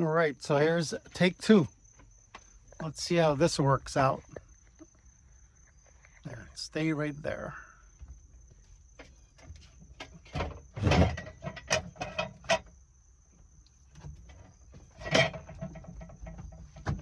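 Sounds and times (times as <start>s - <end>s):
van roof clunking and rattling: 7.9s - 12.8s, 13.4s - 17.0s.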